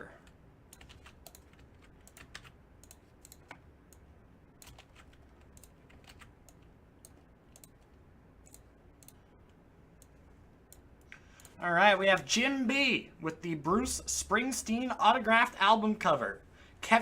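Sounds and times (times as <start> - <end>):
keyboard typing: 0.7 - 11.6
mouse clicks: 0.7 - 11.6.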